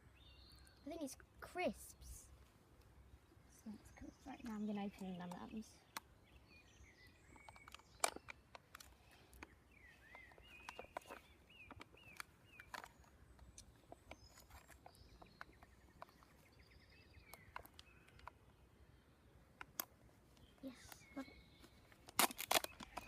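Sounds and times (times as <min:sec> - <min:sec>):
songbird chirping: 0:00.0 - 0:23.0
plastic packaging crinkling: 0:21.9 - 0:23.0.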